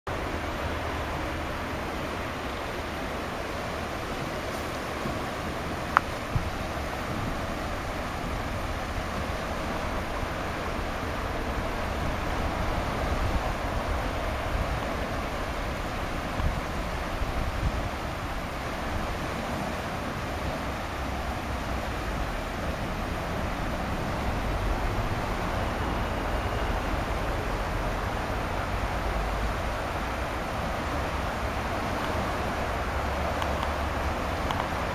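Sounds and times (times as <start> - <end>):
creek water rushing over dam: 0.1 - 34.9.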